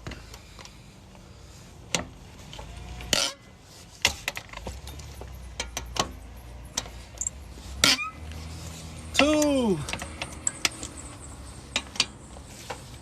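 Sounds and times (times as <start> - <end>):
hand tools clinking on lug nuts: 4.1 - 8.3, 9.0 - 13.0.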